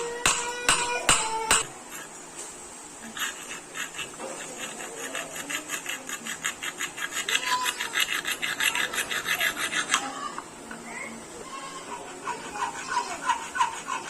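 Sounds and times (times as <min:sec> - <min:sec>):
wood being rasped by hand: 0:03.0 - 0:10.3, 0:11.8 - 0:14.0.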